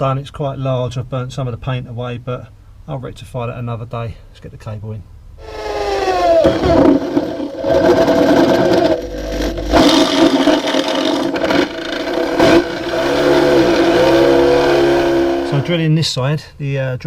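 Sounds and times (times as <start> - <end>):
power drill boring into steel: 5.4 - 15.7.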